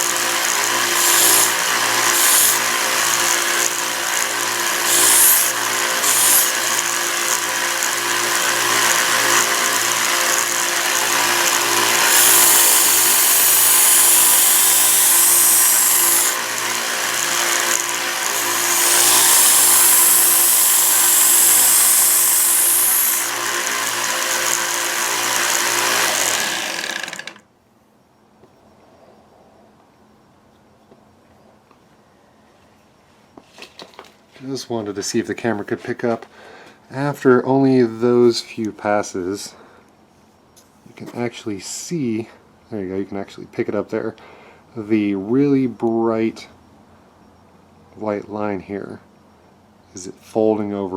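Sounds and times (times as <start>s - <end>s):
belt sander running: 0.0s - 27.4s
knife grinding on sander belt: 0.0s - 27.4s.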